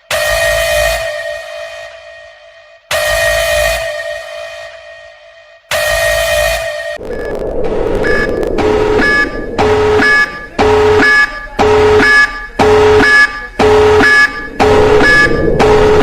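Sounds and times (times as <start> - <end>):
electronic alert alarm beeping: 7.0 - 16.0.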